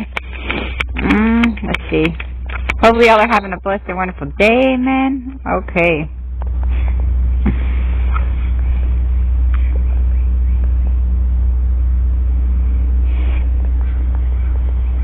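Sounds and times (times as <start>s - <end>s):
constant hum: 0.0s - 15.0s
low rumble: 0.0s - 15.0s.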